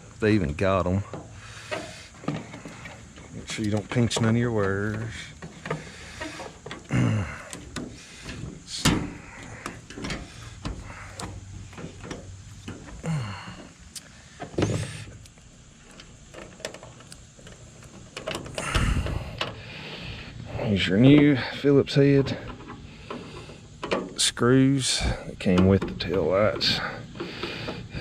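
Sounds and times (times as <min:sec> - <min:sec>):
plastic creaking: 0:01.1 - 0:20.1.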